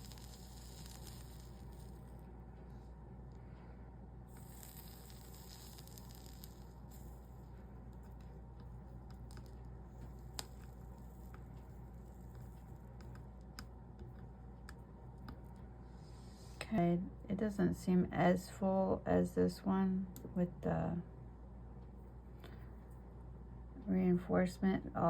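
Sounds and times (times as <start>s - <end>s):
soldering iron sizzling: 0.0s - 3.4s, 4.1s - 16.8s
steady low hum: 0.0s - 25.0s
small ticks: 4.3s - 15.6s.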